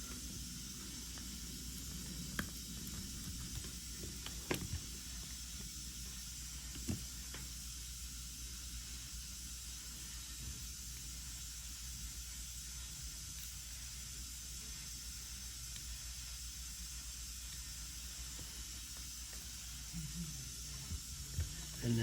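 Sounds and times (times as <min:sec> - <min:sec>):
faint steady hiss: 0:00.0 - 0:22.0.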